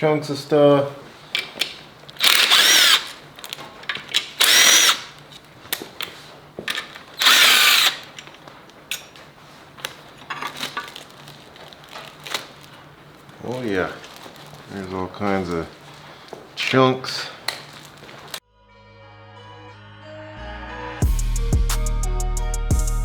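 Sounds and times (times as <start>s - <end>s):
power drill spinning: 2.1s - 5.4s, 6.7s - 8.4s.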